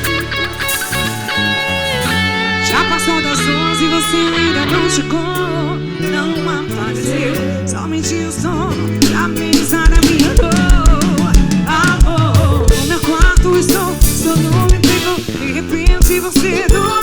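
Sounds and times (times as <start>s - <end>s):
lead melody with vibrato: 0.0s - 17.0s
live band music: 0.0s - 17.0s.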